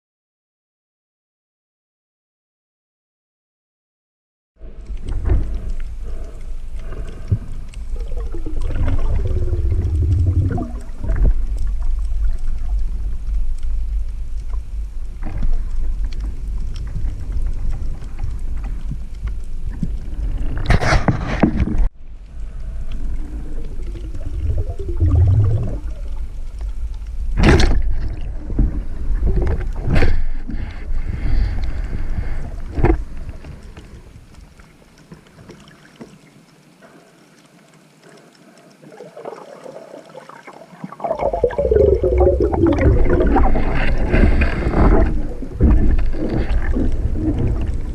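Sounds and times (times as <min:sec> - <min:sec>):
steady low rumble: 0:04.6 - 0:20.6, 0:22.0 - 0:33.7, 0:41.0 - 0:47.9
water gurgling and sloshing: 0:04.6 - 0:47.9.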